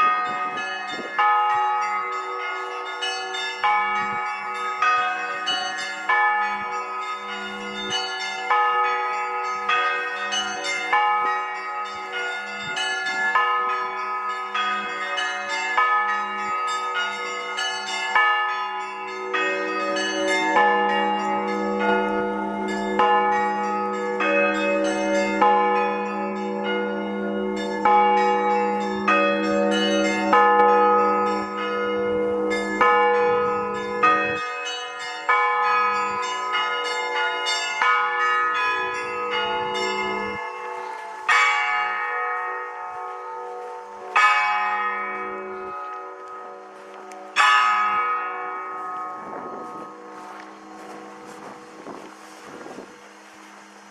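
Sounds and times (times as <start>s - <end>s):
small church bells ringing: 0.0s - 53.9s
deep bell humming: 19.3s - 34.8s.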